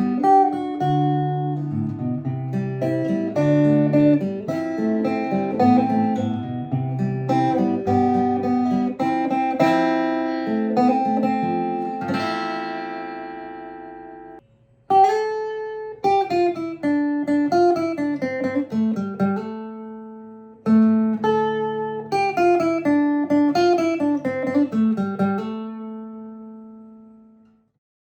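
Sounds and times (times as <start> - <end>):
fingerpicked acoustic guitar: 0.0 - 27.7.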